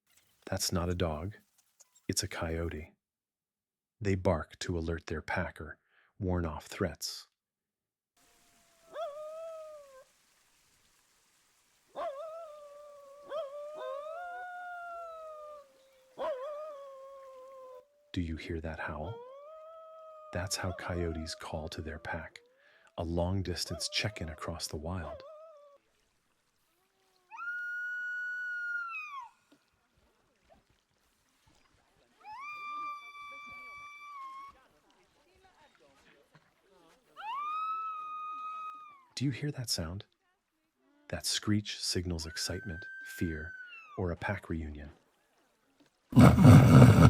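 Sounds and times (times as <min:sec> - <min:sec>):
coyotes howling: 0:08.4 - 0:10.1, 0:12.0 - 0:17.9, 0:19.1 - 0:22.4, 0:23.5 - 0:25.8, 0:27.0 - 0:29.4, 0:32.2 - 0:34.6, 0:37.2 - 0:39.0, 0:42.2 - 0:44.0.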